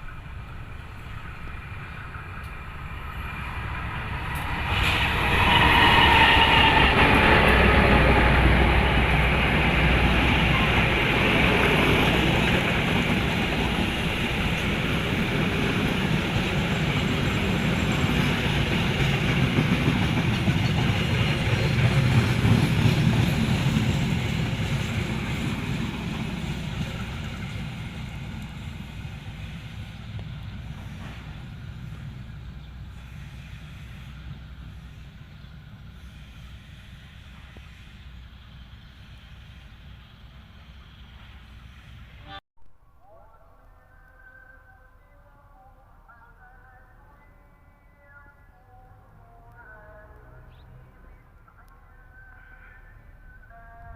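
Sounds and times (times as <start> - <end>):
train rolling on rails: 0.0 - 42.4.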